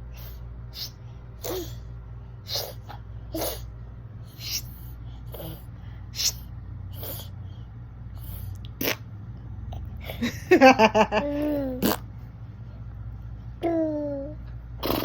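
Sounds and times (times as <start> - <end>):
toddler staccato vocal pulses: 13.6 - 15.0.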